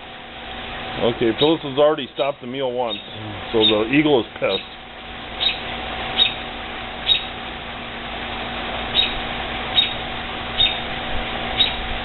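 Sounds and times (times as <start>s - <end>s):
steady hum and hiss: 0.0s - 12.0s
bird chirping: 2.9s - 3.8s, 5.4s - 5.6s, 6.2s - 6.4s, 7.0s - 7.3s, 8.9s - 9.2s, 9.8s - 10.0s, 10.6s - 10.8s, 11.6s - 11.8s.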